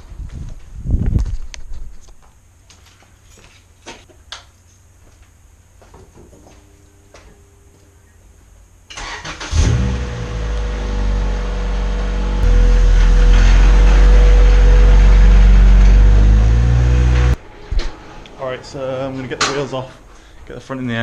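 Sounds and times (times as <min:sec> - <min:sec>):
car engine starting and idling: 0:08.9 - 0:17.4.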